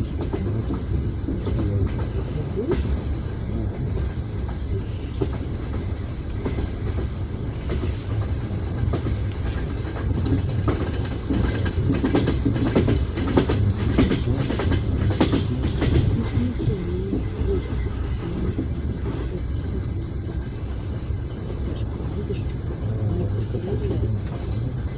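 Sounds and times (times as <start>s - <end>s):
train wheels clattering over rail joints: 0.0s - 17.3s
steady low rumble: 0.0s - 24.9s.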